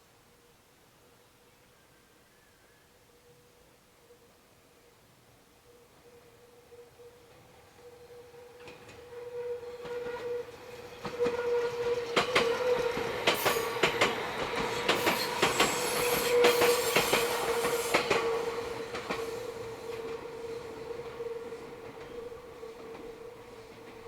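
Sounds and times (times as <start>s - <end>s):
train wheels squealing: 6.6s - 24.0s.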